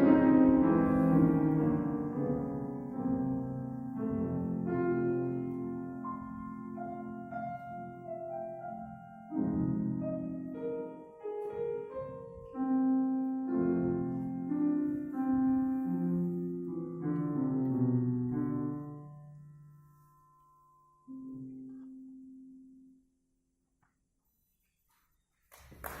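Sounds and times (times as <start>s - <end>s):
piano playing slow chords: 0.0s - 23.3s.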